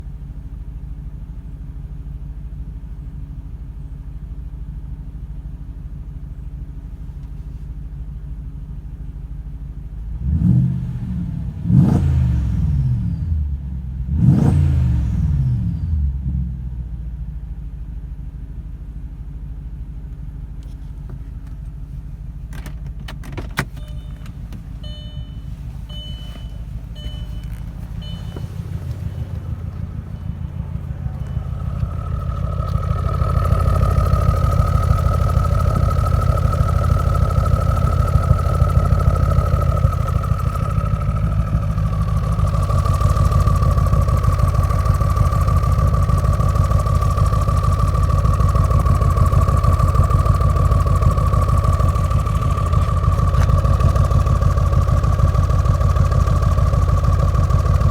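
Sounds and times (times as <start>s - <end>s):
engine revving: 10.2s - 16.2s, 26.8s - 57.9s
car engine idling roughly: 17.0s - 57.9s
short high beeps: 23.8s - 29.3s.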